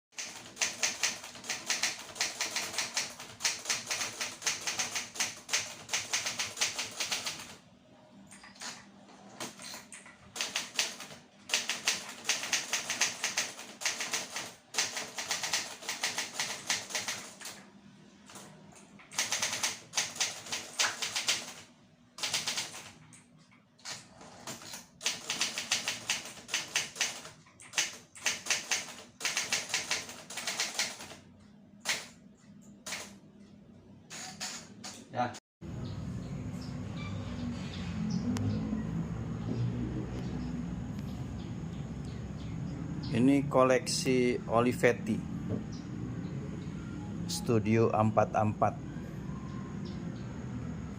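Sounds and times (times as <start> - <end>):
manual typewriter typing: 0.2 - 7.6, 9.4 - 17.6, 19.1 - 23.0, 23.8 - 32.2, 32.8 - 33.2.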